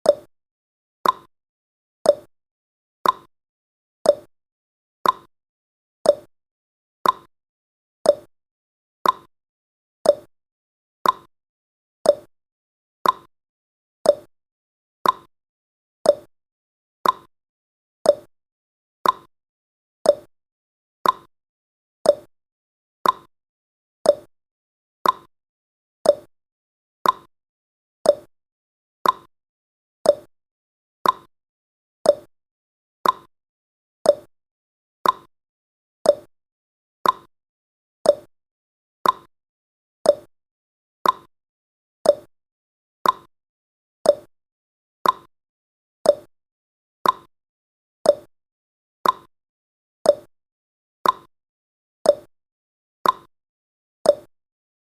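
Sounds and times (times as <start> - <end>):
timer ticking: 0.0 - 0.3, 1.0 - 1.3, 2.1 - 2.3, 3.0 - 3.3, 4.1 - 4.3, 5.0 - 5.3, 6.1 - 6.3, 7.0 - 7.3, 8.1 - 8.3, 9.0 - 9.3, 10.0 - 10.3, 11.0 - 11.3, 12.1 - 12.3, 13.0 - 13.3, 14.1 - 14.3, 15.0 - 15.3, 16.1 - 16.3, 17.0 - 17.3, 18.1 - 18.3, 19.0 - 19.3, 20.1 - 20.3, 21.0 - 21.3, 22.1 - 22.3, 23.0 - 23.3, 24.0 - 24.3, 25.0 - 25.3, 26.0 - 26.3, 27.0 - 27.3, 28.0 - 28.3, 29.0 - 29.3, 30.0 - 30.3, 31.0 - 31.3, 32.0 - 32.3, 33.0 - 33.3, 34.1 - 34.3, 35.0 - 35.3, 36.0 - 36.3, 37.0 - 37.3, 38.0 - 38.3, 39.0 - 39.3, 40.0 - 40.3, 41.0 - 41.3, 42.0 - 42.3, 43.0 - 43.3, 44.1 - 44.3, 45.0 - 45.3, 46.1 - 46.3, 47.0 - 47.3, 48.1 - 48.3, 49.0 - 49.3, 50.1 - 50.3, 51.0 - 51.3, 52.1 - 52.3, 53.0 - 53.3, 54.1 - 54.3.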